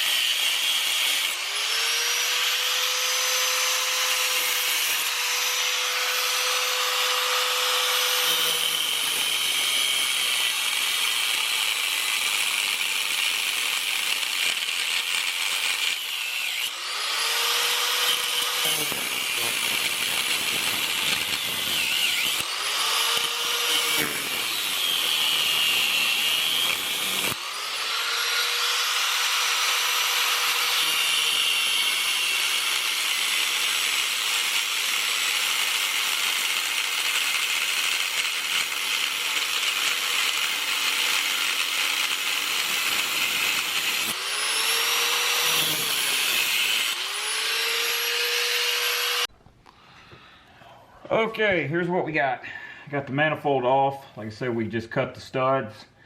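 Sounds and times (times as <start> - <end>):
power saw cutting metal: 0.0 - 49.3.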